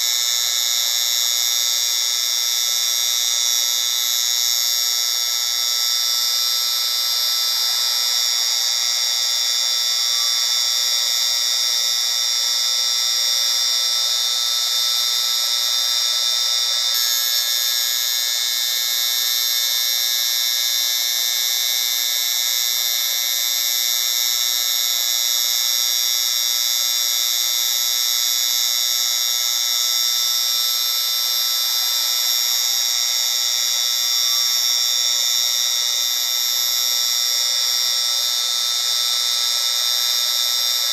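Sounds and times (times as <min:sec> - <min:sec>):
high-pitched hiss with whistling tones: 0:00.0 - 0:40.9.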